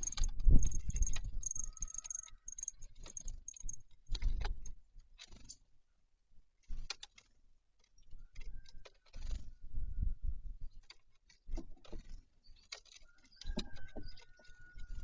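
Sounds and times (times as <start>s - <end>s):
birds pecking and hopping: 0.0s - 15.0s.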